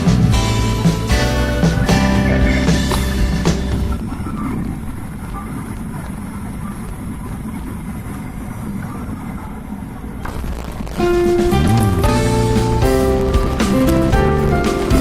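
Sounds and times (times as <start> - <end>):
aircraft cabin rumble: 0.0 - 15.0.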